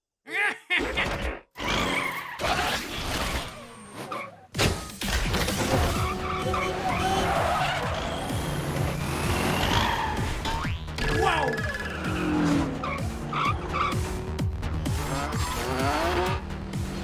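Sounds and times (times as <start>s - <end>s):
cartoon mechanical vehicle noise: 0.7s - 17.0s
skidding screeches: 1.6s - 17.0s
background music: 4.6s - 17.0s.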